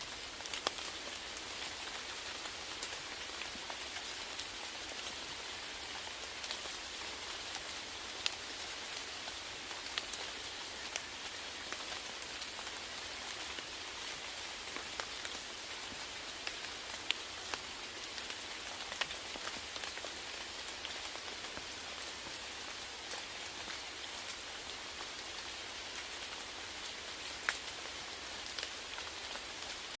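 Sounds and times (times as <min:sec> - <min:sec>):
rain pattering on hard surface: 0:00.0 - 0:30.0.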